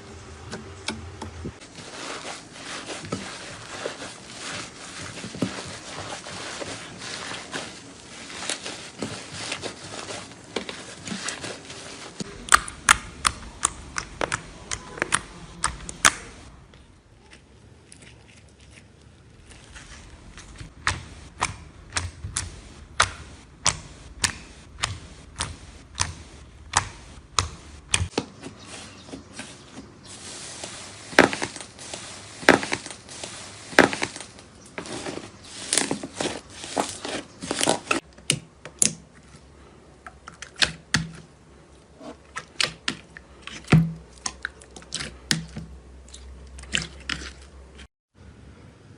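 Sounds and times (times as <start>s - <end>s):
clicks and pops of air: 12.2s - 16.9s, 20.4s - 28.2s.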